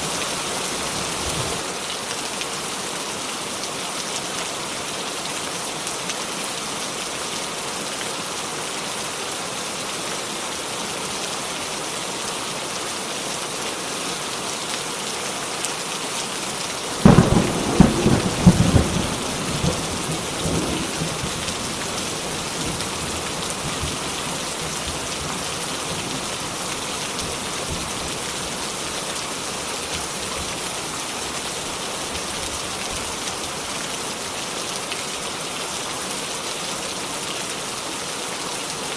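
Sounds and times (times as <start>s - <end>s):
heavy rain falling: 0.0s - 38.9s
thunderclap rumbling: 17.0s - 23.0s.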